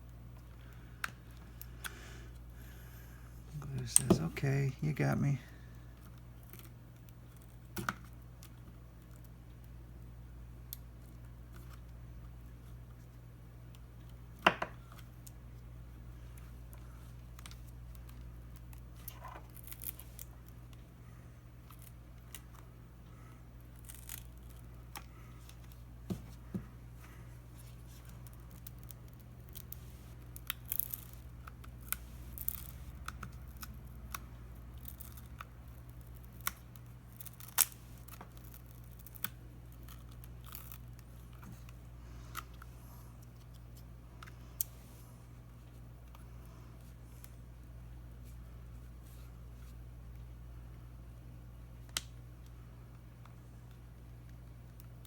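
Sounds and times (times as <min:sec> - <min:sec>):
low electrical hum: 0:00.0 - 0:55.0.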